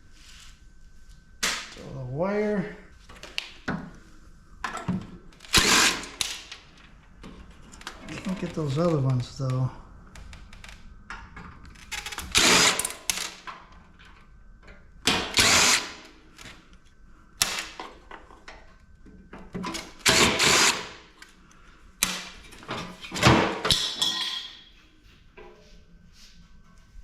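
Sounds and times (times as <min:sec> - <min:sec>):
power drill driving screws: 0:05.4 - 0:06.4, 0:12.2 - 0:13.2, 0:15.2 - 0:16.1, 0:20.0 - 0:20.9.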